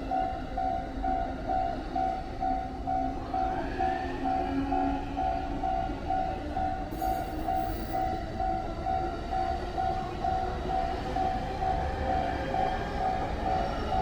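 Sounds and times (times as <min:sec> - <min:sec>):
train rumbling past: 0:00.1 - 0:14.0
level crossing bell ringing: 0:07.0 - 0:08.2.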